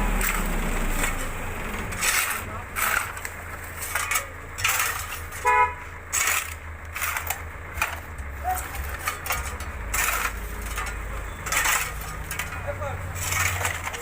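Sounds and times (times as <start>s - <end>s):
low engine rumble: 0.0s - 14.0s
vehicle horn toot: 5.3s - 5.9s.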